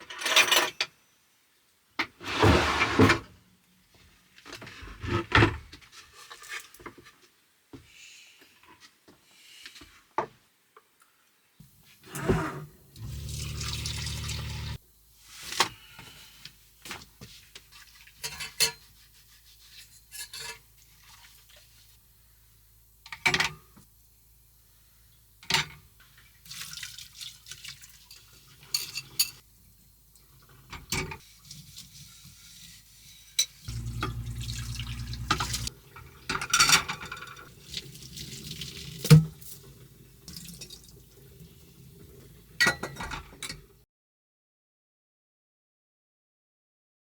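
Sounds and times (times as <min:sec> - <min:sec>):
water running at a sink: 0:12.9 - 0:14.8, 0:26.2 - 0:28.7, 0:33.6 - 0:42.9
dishes and cutlery clattering: 0:28.1 - 0:29.4, 0:33.7 - 0:35.7
steady low hum: 0:33.7 - 0:35.7.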